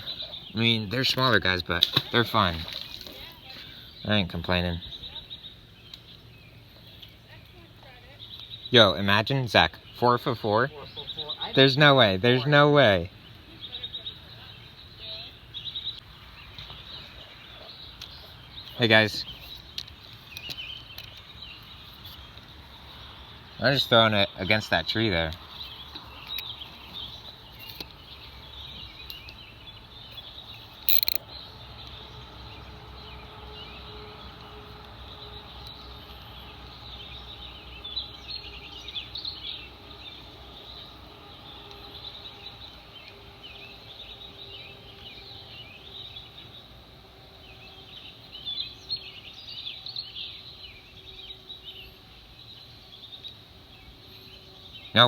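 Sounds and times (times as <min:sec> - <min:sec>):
birds chirping and twittering: 0:00.0 - 0:55.0
sharp click: 0:30.8 - 0:31.2.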